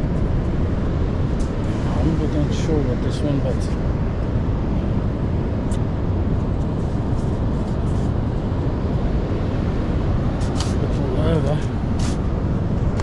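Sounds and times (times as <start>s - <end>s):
storm wind buffeting microphone: 0.0s - 13.0s
surf rumbling: 0.0s - 13.0s.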